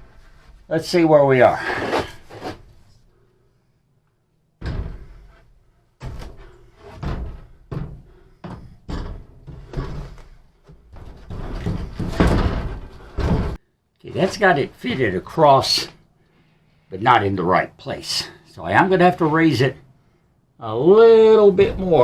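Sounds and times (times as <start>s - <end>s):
wood knocking and thumping: 4.6s - 13.6s, 21.5s - 22.0s.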